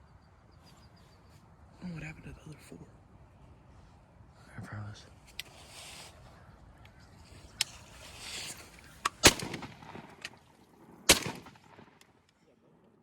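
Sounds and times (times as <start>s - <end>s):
shotgun shots: 9.0s - 10.4s, 11.0s - 12.1s.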